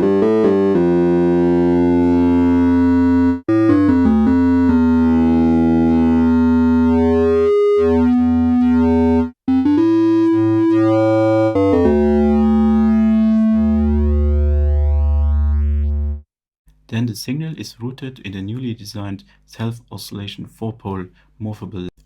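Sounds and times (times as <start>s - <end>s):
synthesizer held chords: 0.0s - 16.3s
deep bass note: 1.2s - 16.3s.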